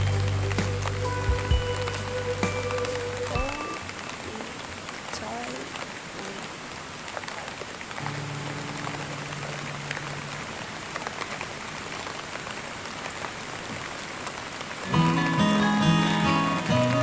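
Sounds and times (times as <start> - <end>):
steady rain falling: 0.0 - 17.0
low steady hum: 8.0 - 11.7.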